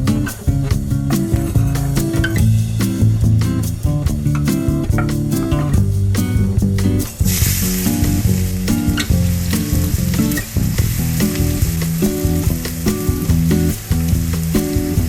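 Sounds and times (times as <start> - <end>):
guitar and bass music: 0.0 - 15.0
food sizzling in hot oil: 7.2 - 15.0.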